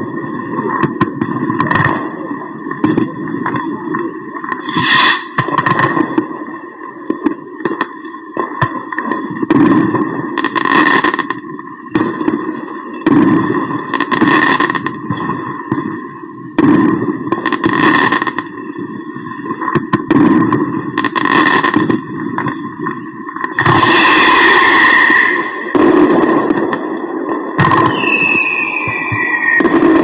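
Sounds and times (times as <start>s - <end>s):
fireworks exploding: 4.5s - 30.0s
steady high tones: 4.6s - 5.4s.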